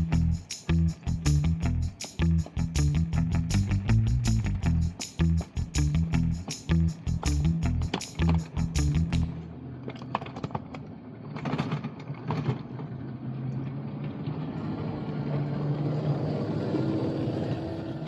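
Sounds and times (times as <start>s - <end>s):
train clicks and rattles: 6.5s - 9.1s, 9.8s - 14.7s.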